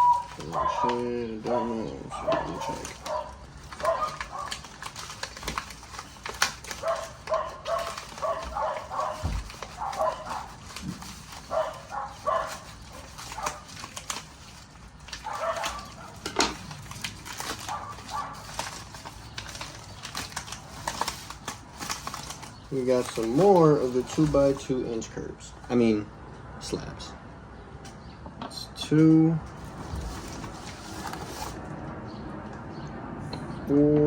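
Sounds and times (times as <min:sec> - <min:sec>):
packaging clicks and rustles: 0:00.0 - 0:25.2, 0:29.5 - 0:31.7
dog barking: 0:00.1 - 0:04.5, 0:06.8 - 0:10.6, 0:11.5 - 0:13.7, 0:15.2 - 0:16.2, 0:17.7 - 0:18.5.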